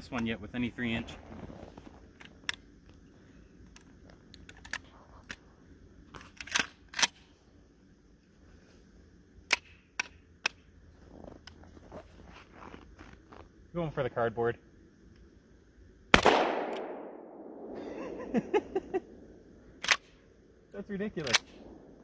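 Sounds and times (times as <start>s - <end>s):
shotgun mechanical clicks: 6.2s - 7.3s, 19.8s - 20.2s, 21.2s - 21.8s.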